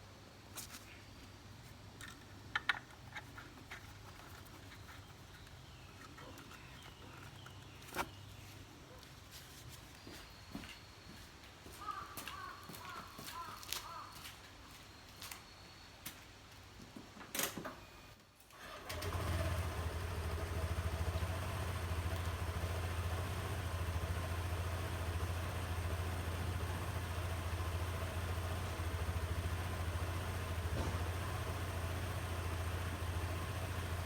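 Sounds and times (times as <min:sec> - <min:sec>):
scooter engine starting and idling: 0:18.6 - 0:34.0.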